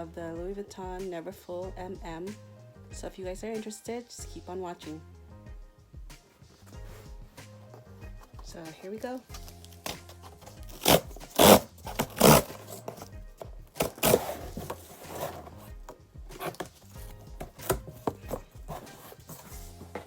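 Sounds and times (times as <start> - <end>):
soft background music: 0.0 - 20.0
cardboard box scraping and rustling: 9.8 - 13.1, 13.7 - 15.7, 16.4 - 20.0.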